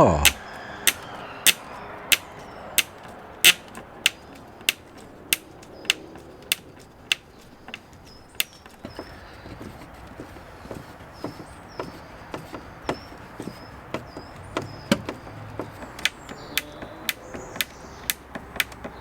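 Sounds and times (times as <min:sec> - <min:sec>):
hammer knocking on wood: 0:00.1 - 0:06.6, 0:08.4 - 0:19.0
faint bird chirps: 0:04.2 - 0:19.0.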